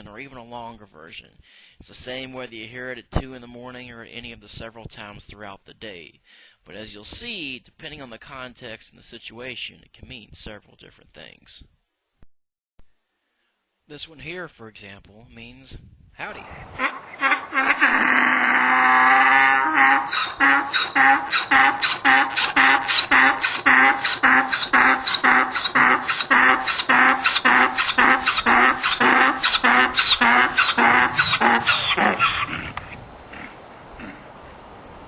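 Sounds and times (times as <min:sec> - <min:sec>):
donkey braying: 0:16.2 - 0:34.3.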